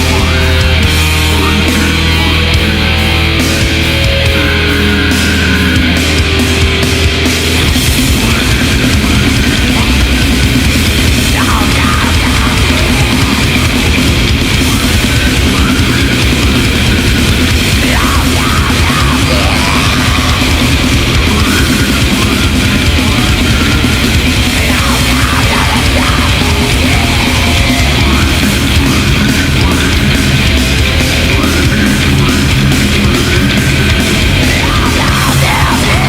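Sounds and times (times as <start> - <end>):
bass guitar: 0.0 - 36.0
distorted guitar: 0.0 - 36.0
programmed drums: 0.0 - 36.0.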